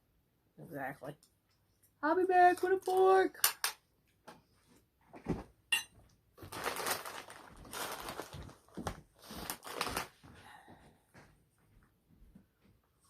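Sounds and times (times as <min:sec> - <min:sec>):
crackers being crunched: 0:06.4 - 0:10.2.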